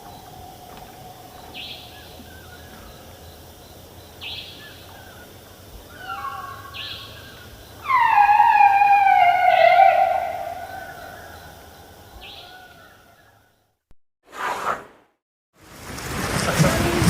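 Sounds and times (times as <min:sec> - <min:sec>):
faint chirps: 0:00.0 - 0:13.7
elephant trumpeting: 0:07.8 - 0:11.4.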